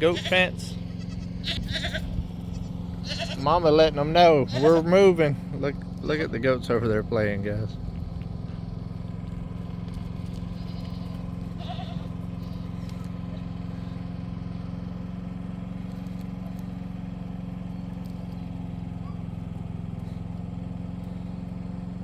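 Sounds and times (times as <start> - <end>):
goat bleat: 0.0 - 5.6, 10.0 - 15.0
engine idling: 0.0 - 22.0.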